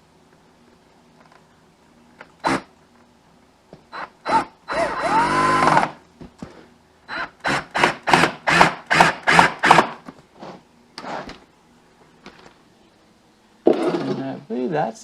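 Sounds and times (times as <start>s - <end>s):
drill driving screw into wood: 2.4s - 2.7s, 4.0s - 6.0s, 7.1s - 10.0s.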